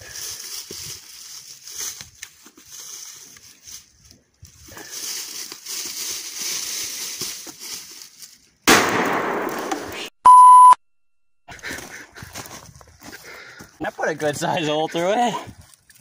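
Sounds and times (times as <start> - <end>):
shotgun blast: 8.7 - 10.1
electronic beep: 10.2 - 10.8.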